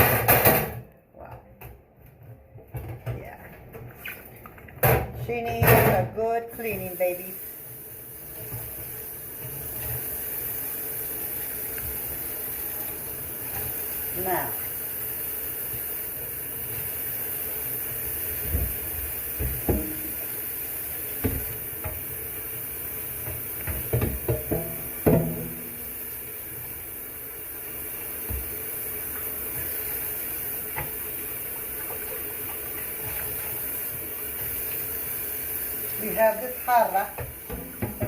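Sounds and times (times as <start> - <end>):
electric kettle hissing: 6.4 - 38.0
objects knocking and clunking: 18.4 - 20.2, 23.2 - 25.9, 37.1 - 38.0.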